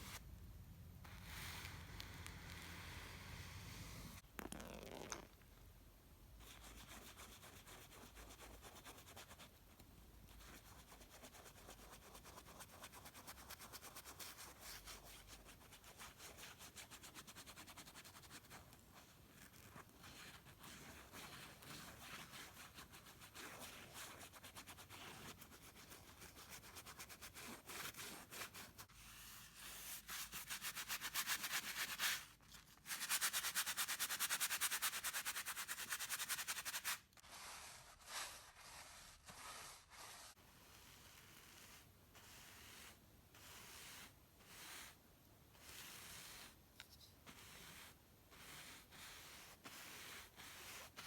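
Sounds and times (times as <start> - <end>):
paintbrush scrubbing on canvas: 32.9 - 45.0, 45.6 - 46.6, 47.2 - 51.0.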